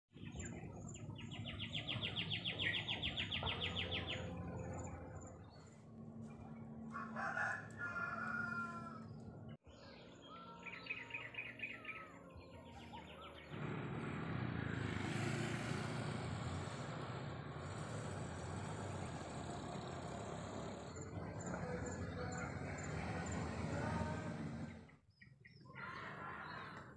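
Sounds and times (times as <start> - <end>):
small birds chirping trills: 0.2 - 6.6
rooster crowing: 6.8 - 9.2.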